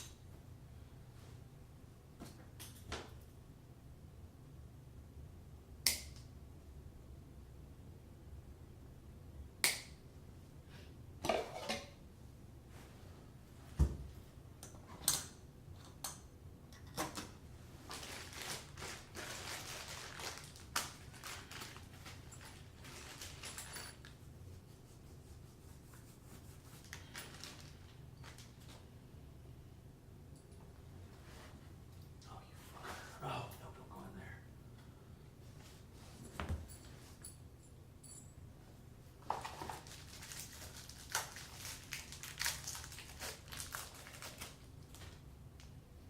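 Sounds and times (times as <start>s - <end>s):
rustling: 17.7s - 28.8s.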